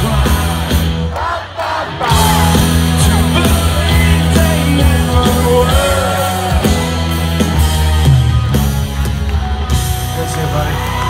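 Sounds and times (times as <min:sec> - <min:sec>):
drum beats: 0:00.0 - 0:11.0
live rock band: 0:00.0 - 0:11.0
steady bass line: 0:00.0 - 0:11.0
person singing: 0:02.0 - 0:07.0.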